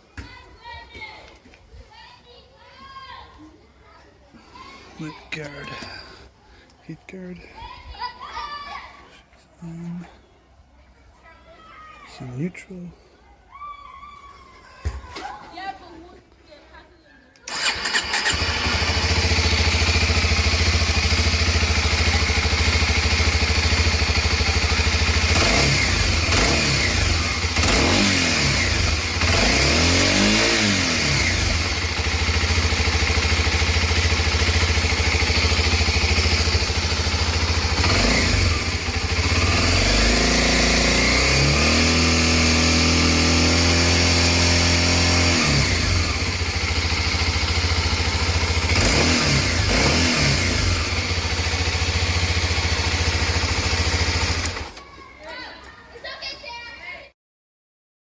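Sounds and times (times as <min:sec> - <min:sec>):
motorcycle engine idling and revving: 0:17.5 - 0:54.8.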